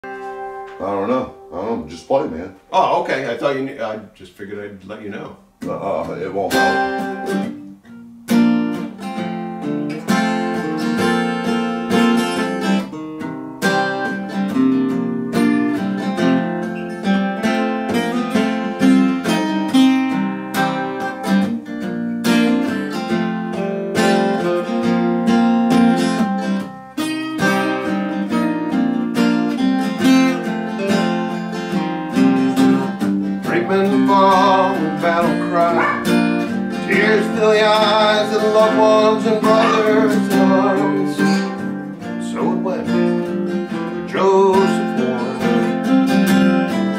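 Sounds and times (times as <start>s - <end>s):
acoustic guitar strumming: 0.0s - 3.5s, 5.2s - 46.9s.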